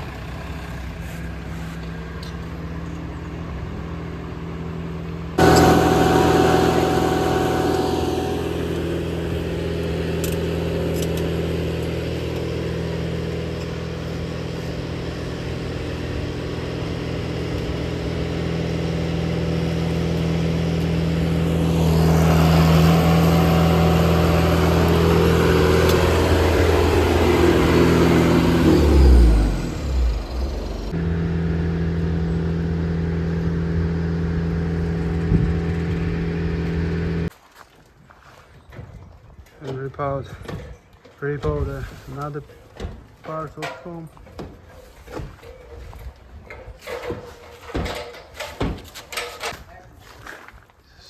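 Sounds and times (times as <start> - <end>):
vehicle engine running: 0.0 - 37.3.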